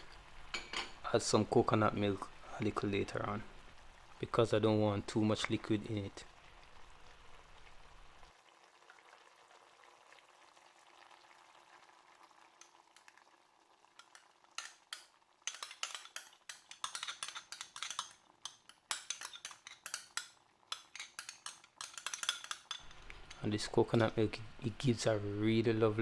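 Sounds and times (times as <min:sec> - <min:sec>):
faint sizzle in a pot: 0:00.0 - 0:26.0
utensil stirring and scraping pot: 0:14.0 - 0:26.0.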